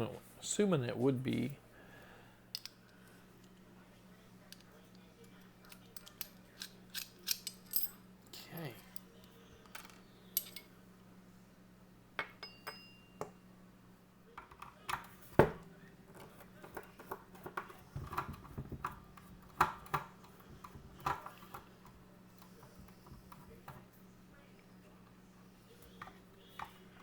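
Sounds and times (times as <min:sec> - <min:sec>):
metal parts clicking and clinking: 0:05.6 - 0:08.0, 0:09.6 - 0:10.7.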